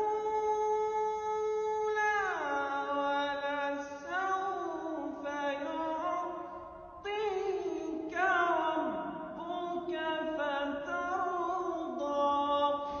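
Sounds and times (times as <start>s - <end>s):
person chanting melodically: 0.0s - 13.0s.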